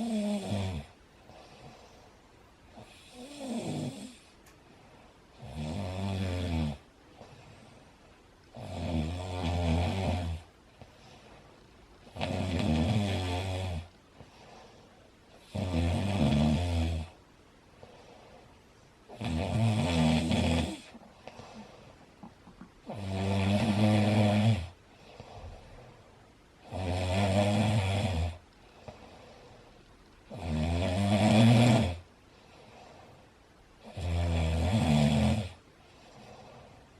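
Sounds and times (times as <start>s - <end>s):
man snoring loudly: 0.0s - 1.0s, 2.8s - 4.3s, 5.4s - 6.8s, 8.6s - 10.5s, 12.1s - 13.9s, 15.4s - 17.2s, 19.1s - 21.0s, 22.8s - 24.8s, 26.6s - 28.4s, 30.3s - 32.0s, 33.8s - 35.6s.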